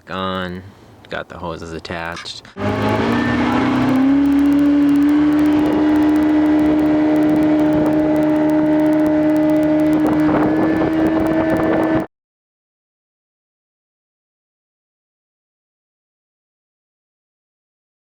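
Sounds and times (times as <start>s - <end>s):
outboard motor running: 2.6s - 12.1s.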